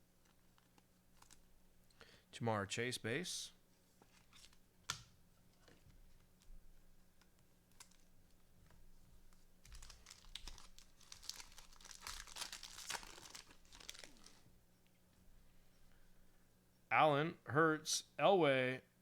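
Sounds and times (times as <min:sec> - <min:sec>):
wrapper crinkling and tearing: 0:00.2 - 0:01.5, 0:04.1 - 0:04.6, 0:07.7 - 0:08.1, 0:09.6 - 0:14.5.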